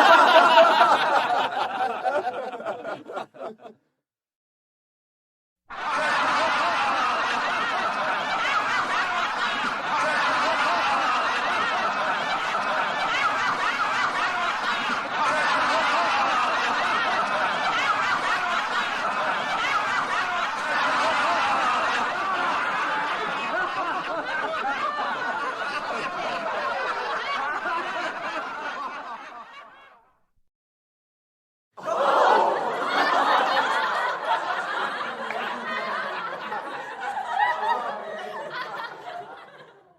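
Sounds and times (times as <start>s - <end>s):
crowd laughing: 0.0s - 3.9s, 5.7s - 30.2s, 31.8s - 39.9s.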